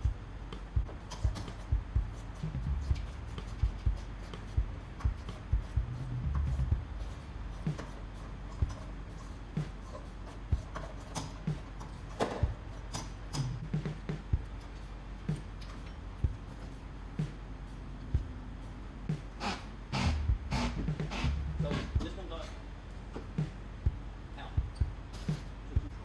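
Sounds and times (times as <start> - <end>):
low rumble: 0.0 - 7.8, 15.3 - 19.2, 20.1 - 22.8
tools and parts clicking: 10.8 - 13.6.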